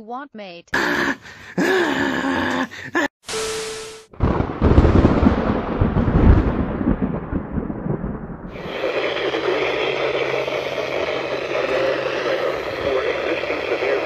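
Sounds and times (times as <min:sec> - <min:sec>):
loud long rumble: 0:04.2 - 0:14.0
hiss burst: 0:08.5 - 0:14.0
steady low hum: 0:08.5 - 0:14.0.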